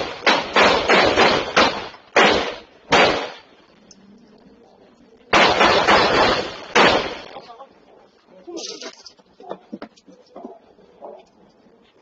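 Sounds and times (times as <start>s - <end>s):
gunshots: 0.0s - 3.7s, 5.3s - 7.4s.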